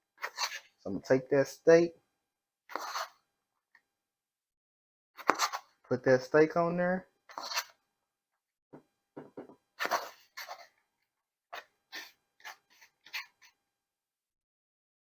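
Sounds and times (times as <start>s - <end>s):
food rustling and scraping: 0.2s - 0.8s, 2.7s - 3.2s, 7.3s - 7.8s, 9.8s - 10.7s.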